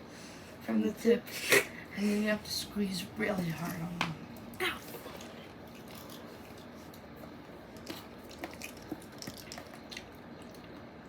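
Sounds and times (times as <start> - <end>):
plastic bottle squishing: 7.7 - 10.7.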